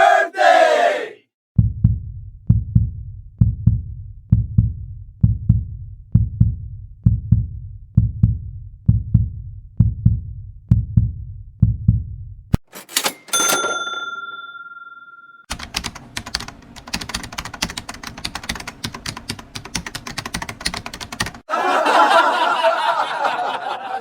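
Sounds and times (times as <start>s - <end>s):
heartbeat thumps: 1.6s - 12.2s.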